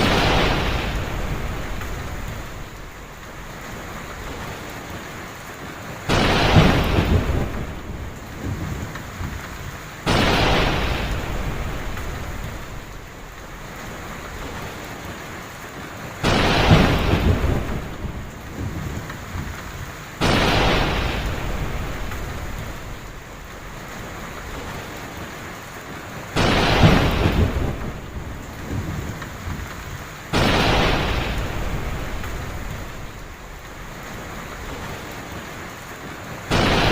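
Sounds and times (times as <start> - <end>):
thunder claps rumbling: 0.0 - 5.0, 5.6 - 15.2, 15.8 - 36.9
heavy rain falling: 0.0 - 36.9.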